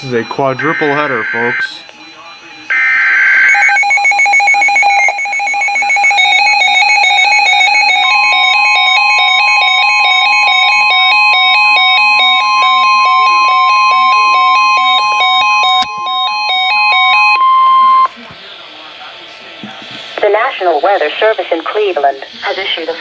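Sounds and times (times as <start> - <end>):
screechy data burst: 0.0 - 6.3
electronic alert beeping: 0.0 - 18.1
steady warning alarm tone: 0.0 - 19.5.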